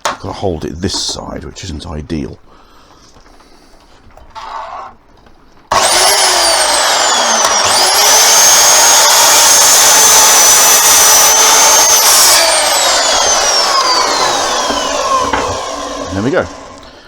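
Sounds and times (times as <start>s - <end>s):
power saw whining: 5.6s - 17.0s.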